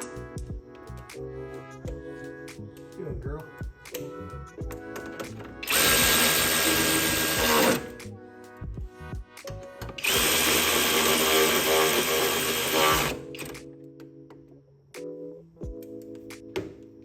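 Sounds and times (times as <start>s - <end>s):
background music: 0.0s - 17.0s
power drill whining: 5.6s - 8.0s, 10.0s - 13.5s.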